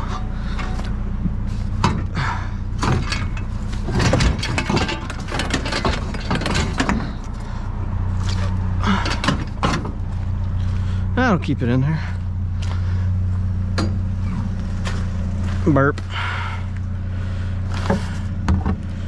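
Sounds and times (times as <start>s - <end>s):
scrap metal clattering and banging: 0.0s - 10.8s
vehicle engine idling: 0.0s - 19.0s.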